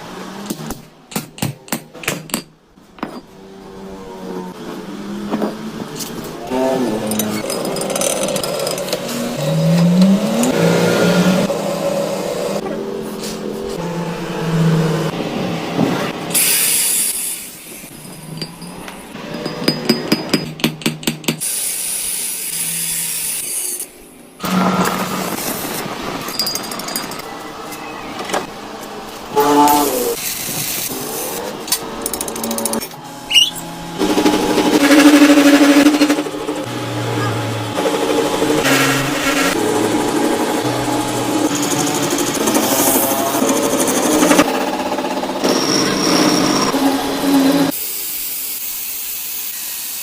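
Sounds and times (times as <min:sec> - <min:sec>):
shop machinery humming: 0:31.4 - 0:47.8.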